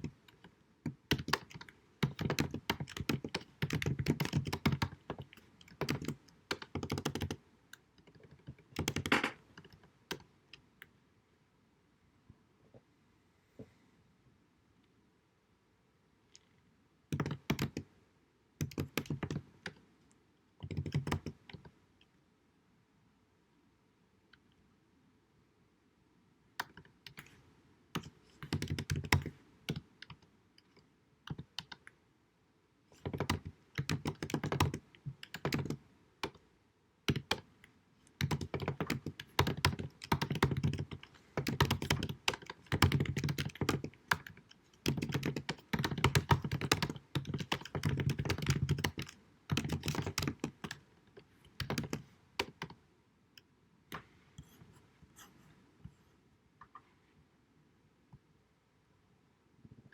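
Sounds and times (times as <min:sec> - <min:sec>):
typing on computer keyboard: 0:00.0 - 0:10.3, 0:17.1 - 0:17.9, 0:18.6 - 0:19.8, 0:20.6 - 0:21.7, 0:26.6 - 0:27.3, 0:27.9 - 0:31.9, 0:33.0 - 0:36.4, 0:37.1 - 0:37.5, 0:38.1 - 0:52.8.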